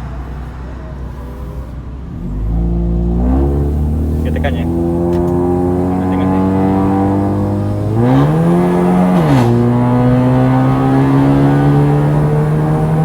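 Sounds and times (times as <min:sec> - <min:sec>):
car engine revving: 0:00.0 - 0:13.0
exhaust crackle: 0:00.0 - 0:13.0.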